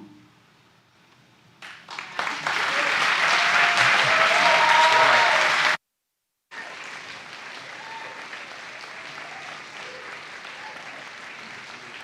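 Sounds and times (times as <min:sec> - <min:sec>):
audience applauding: 0:01.6 - 0:05.8, 0:06.5 - 0:12.0
audience cheering: 0:01.9 - 0:05.8, 0:06.5 - 0:12.0.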